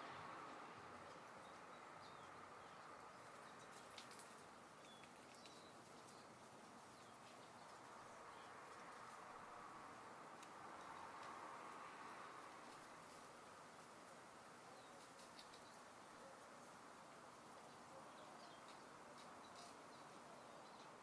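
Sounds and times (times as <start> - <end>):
faint outdoor ambience: 0.0 - 21.0
small tick: 10.4 - 10.6.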